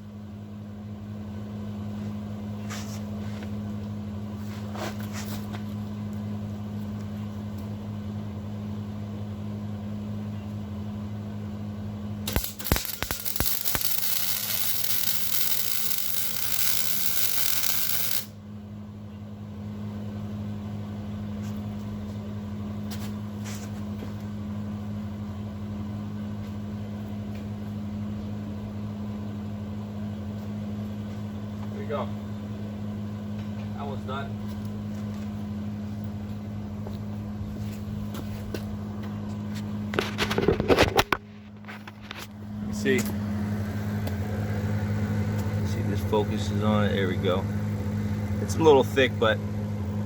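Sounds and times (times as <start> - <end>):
low electrical hum: 0.0 - 50.0
arc welding frying hiss: 12.3 - 18.3
welding arc crackles: 12.3 - 18.4.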